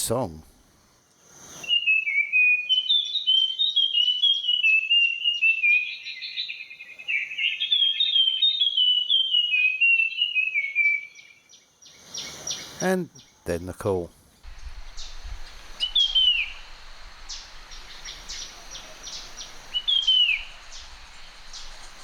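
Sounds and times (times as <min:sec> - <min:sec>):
bird whistling song: 0:01.5 - 0:13.3, 0:14.5 - 0:22.0
high insect drone: 0:14.5 - 0:22.0.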